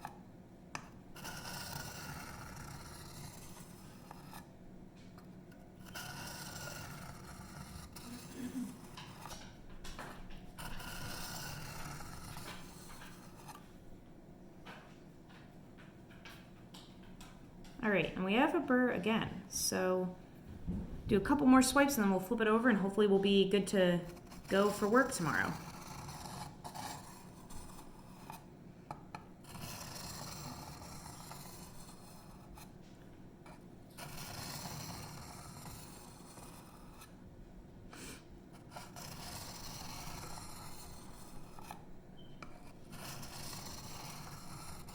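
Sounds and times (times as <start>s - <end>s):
knife scraping on sharpening stone: 1.2s - 4.4s, 5.8s - 9.2s.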